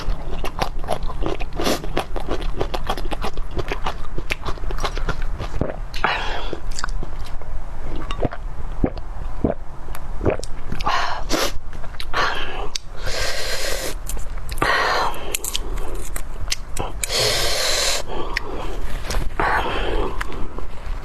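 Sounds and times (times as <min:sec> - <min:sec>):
wet mouth clicks: 0:11.9 - 0:18.6
breathy bursts of air through mouth: 0:12.2 - 0:14.0, 0:17.1 - 0:20.2.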